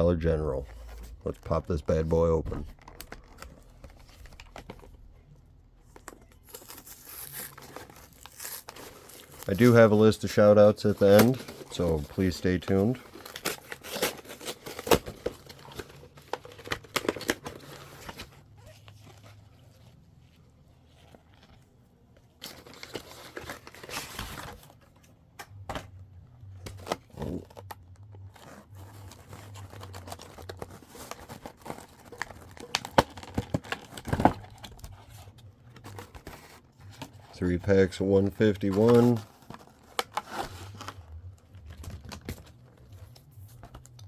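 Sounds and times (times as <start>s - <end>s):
packaging tearing and crinkling: 6.0s - 19.4s, 22.4s - 24.8s, 26.7s - 37.3s, 38.3s - 44.0s.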